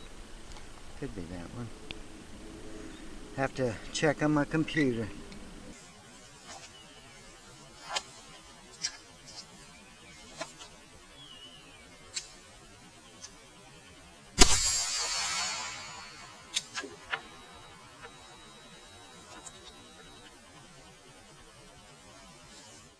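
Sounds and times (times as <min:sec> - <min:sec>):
pistol shot: 0:14.4 - 0:16.7
hiss: 0:14.4 - 0:16.9.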